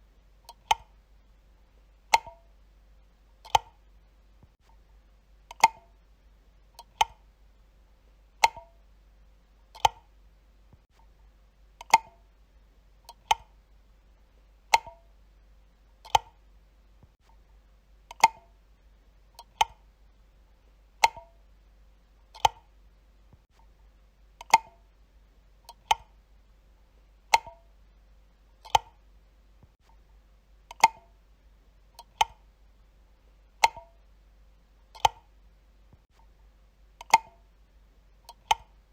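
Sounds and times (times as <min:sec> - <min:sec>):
wall light switch clicking: 0:02.1 - 0:02.4, 0:14.7 - 0:15.0, 0:27.3 - 0:27.6, 0:33.6 - 0:34.0, 0:37.0 - 0:37.4.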